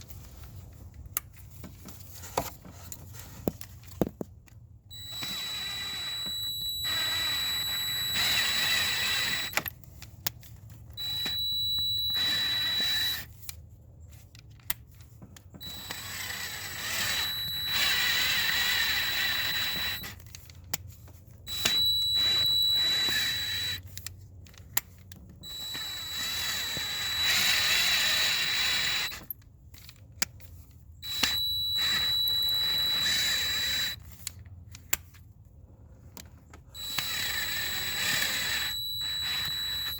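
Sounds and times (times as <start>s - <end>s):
clicks: 4.9s - 9.7s, 11.0s - 13.3s, 15.6s - 20.1s, 21.5s - 23.8s, 25.4s - 29.3s, 31.0s - 34.0s, 36.8s - 39.9s
power drill whining: 4.9s - 9.7s, 11.0s - 13.3s, 15.6s - 20.2s, 21.5s - 23.8s, 25.4s - 29.3s, 31.0s - 34.0s, 36.8s - 39.9s.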